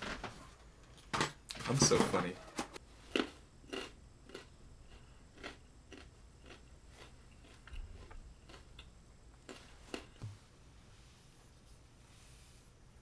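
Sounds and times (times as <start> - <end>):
person chewing food: 3.0 - 10.4.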